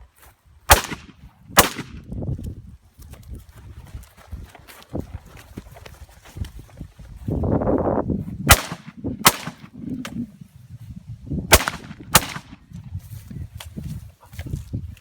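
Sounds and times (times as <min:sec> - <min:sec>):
gunshots with echo: 0:00.7 - 0:01.9, 0:08.5 - 0:09.8, 0:11.5 - 0:12.6.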